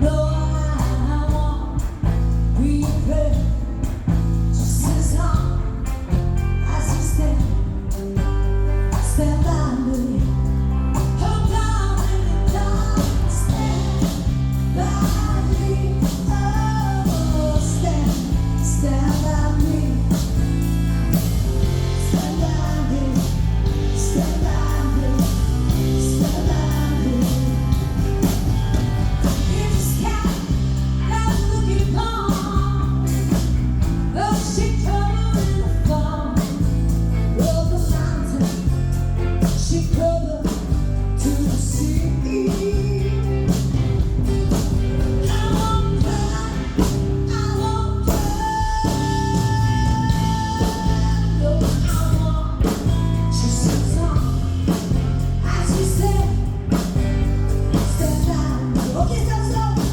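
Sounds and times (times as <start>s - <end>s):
rock and roll band playing: 0.0s - 59.9s
person singing: 8.9s - 20.5s, 21.1s - 33.5s, 37.4s - 59.9s.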